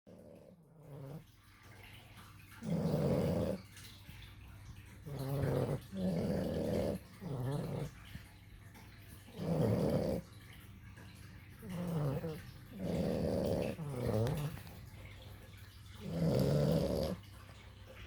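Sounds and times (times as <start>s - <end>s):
puppies snoring: 0.1s - 1.3s, 2.5s - 3.9s, 4.9s - 8.4s, 9.0s - 10.7s, 11.4s - 17.4s.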